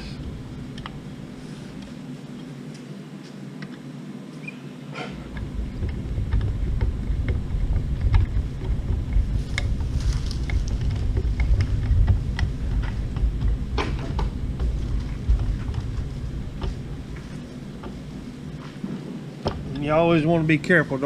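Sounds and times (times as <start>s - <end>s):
loud low rumbling: 5.2s - 21.0s.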